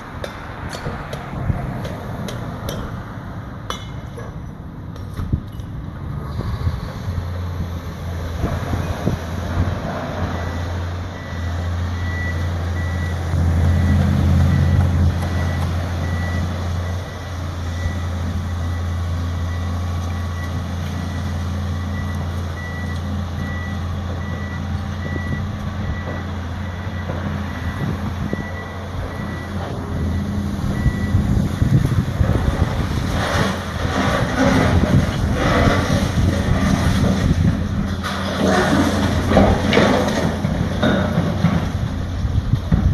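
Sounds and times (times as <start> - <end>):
diesel engine drone: 0.0 - 42.9
backup alarm beeping: 10.4 - 18.9, 21.1 - 31.2.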